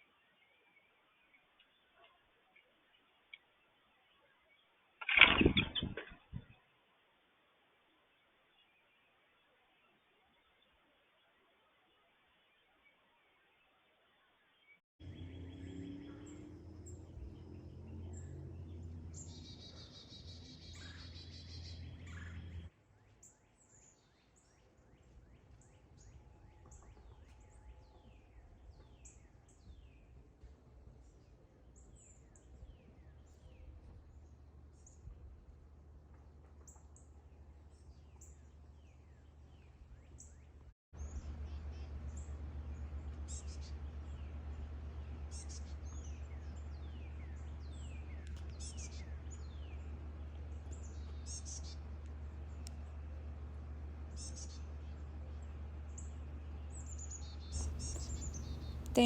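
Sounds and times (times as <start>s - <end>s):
low electrical hum: 15.0s - 22.7s, 24.8s - 59.0s
small birds chirping: 15.0s - 30.2s, 36.6s - 59.0s.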